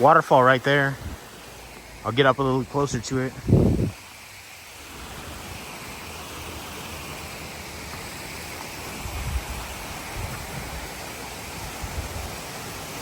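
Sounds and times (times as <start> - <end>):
creek waterfall splashing: 0.0 - 13.0.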